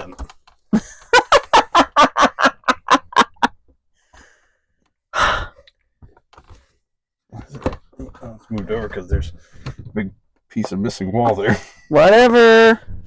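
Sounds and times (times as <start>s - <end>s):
person laughing: 0.8s - 3.5s
heavy breath out: 4.0s - 4.6s, 5.2s - 5.6s.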